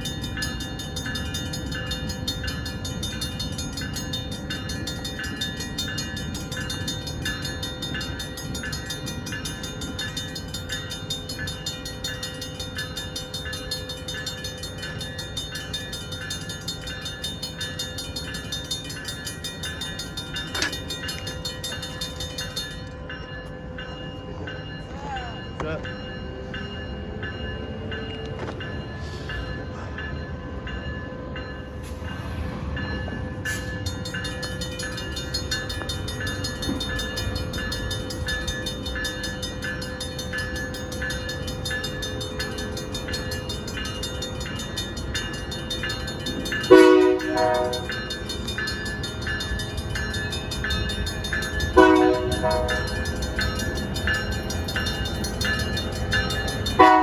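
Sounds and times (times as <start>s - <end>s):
diesel locomotive rumbling: 0.0s - 57.0s
locomotive horn blasts: 46.7s - 47.9s, 51.8s - 52.9s, 56.8s - 57.0s.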